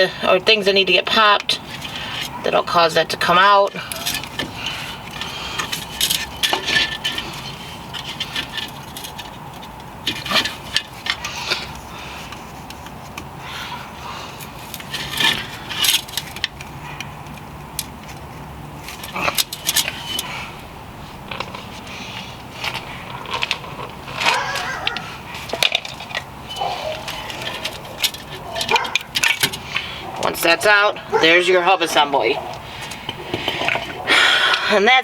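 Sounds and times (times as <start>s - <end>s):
tools clicking and tapping: 14.6s - 18.3s, 22.6s - 30.8s.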